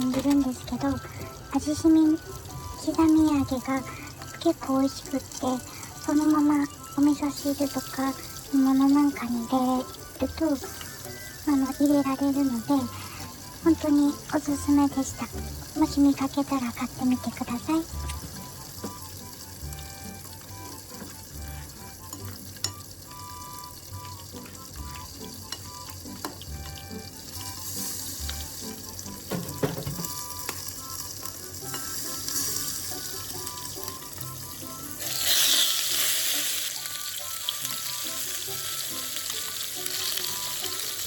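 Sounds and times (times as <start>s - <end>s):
eggplant sizzling in oil: 0.0s - 41.0s.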